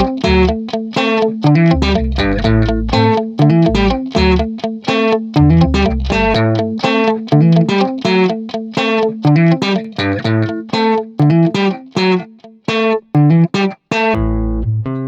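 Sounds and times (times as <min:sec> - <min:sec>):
bass notes: 0:00.0 - 0:00.6, 0:01.5 - 0:04.5, 0:05.4 - 0:06.7, 0:14.2 - 0:15.0
plucked guitar notes: 0:00.0 - 0:15.0.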